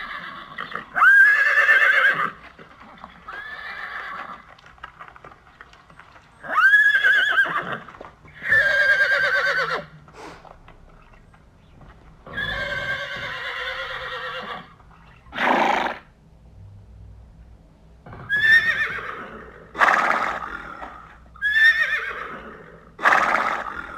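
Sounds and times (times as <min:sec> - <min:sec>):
horse whinnying: 0:00.0 - 0:04.6, 0:06.4 - 0:10.0, 0:12.3 - 0:16.1, 0:18.1 - 0:23.9.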